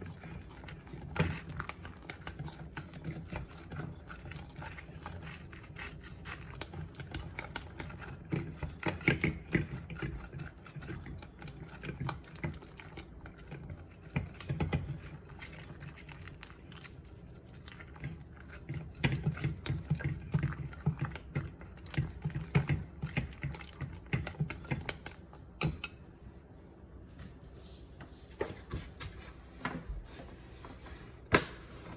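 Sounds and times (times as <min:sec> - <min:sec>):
wet liquid sounds: 0:00.0 - 0:25.2.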